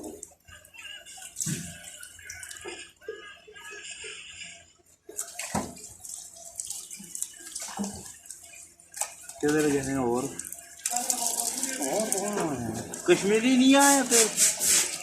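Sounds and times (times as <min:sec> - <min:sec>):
water running and splashing: 0:01.1 - 0:02.7, 0:05.1 - 0:15.0.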